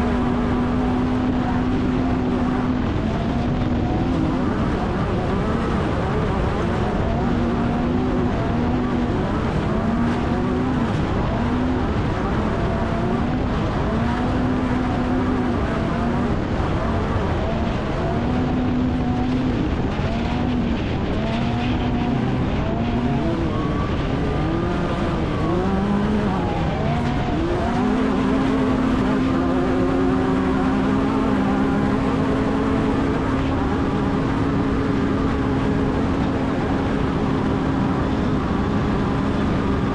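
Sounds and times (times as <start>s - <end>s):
constant rushing noise: 0.0s - 39.9s
race vehicle engine revving: 0.0s - 39.9s.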